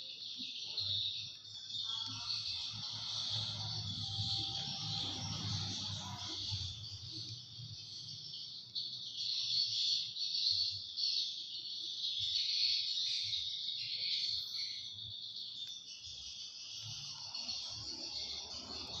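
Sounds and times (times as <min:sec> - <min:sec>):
insect chorus chirring: 0:00.0 - 0:19.0.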